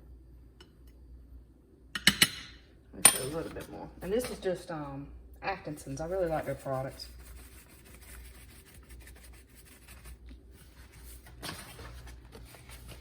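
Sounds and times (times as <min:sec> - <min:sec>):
dry flour mix rustling in a bowl: 0:05.8 - 0:13.0
scrape in a bowl: 0:05.9 - 0:11.4.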